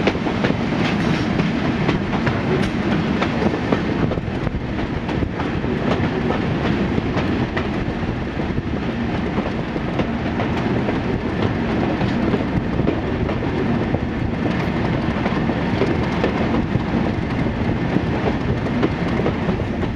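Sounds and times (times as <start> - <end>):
train rumble: 0.0 - 19.9.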